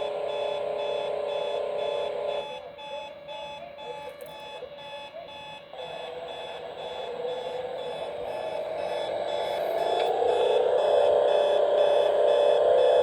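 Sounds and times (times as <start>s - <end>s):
steady buzzing tone: 0.0s - 2.6s, 5.8s - 13.0s
high pulsing beeps: 0.0s - 13.0s.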